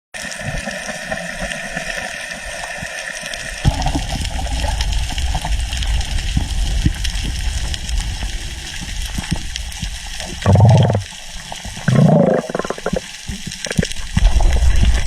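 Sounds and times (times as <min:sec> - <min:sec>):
water sloshing and trickling: 0:03.6 - 0:15.0
small ticks: 0:06.3 - 0:14.2.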